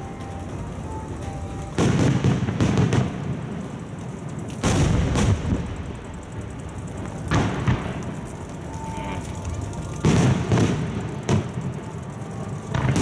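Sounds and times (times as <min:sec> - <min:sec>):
firework shells booming: 0:01.8 - 0:03.8, 0:04.6 - 0:06.2, 0:07.1 - 0:08.4, 0:10.0 - 0:11.9, 0:12.7 - 0:13.0.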